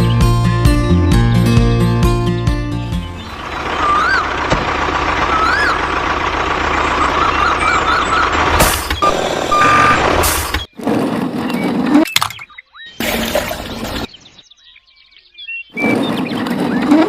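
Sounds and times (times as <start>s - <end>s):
truck engine: 1.0s - 10.7s
warbling electronic beeps: 9.0s - 10.6s.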